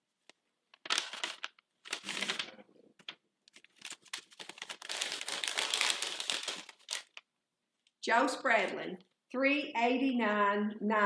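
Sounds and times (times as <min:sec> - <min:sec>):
paper rustling and crinkling: 0:00.7 - 0:07.2
envelope tearing: 0:00.9 - 0:02.6, 0:03.5 - 0:07.2.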